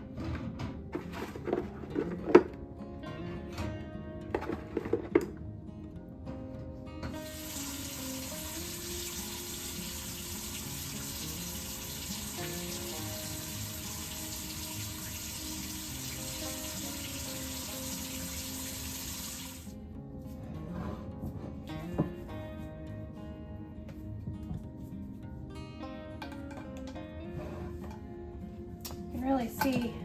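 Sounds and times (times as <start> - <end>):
quiet background music: 0.0 - 30.0
water running: 7.2 - 19.8.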